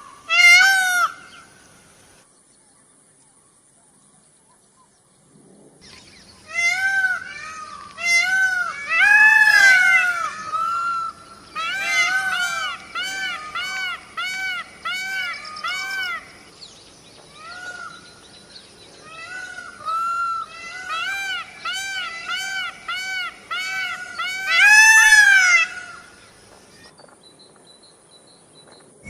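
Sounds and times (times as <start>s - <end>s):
peacock calling: 0.0s - 2.2s, 5.8s - 16.6s, 17.3s - 26.9s.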